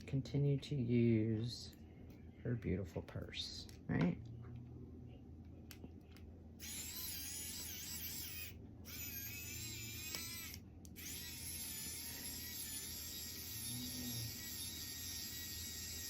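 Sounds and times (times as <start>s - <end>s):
small electric motor whirring: 6.6s - 16.0s.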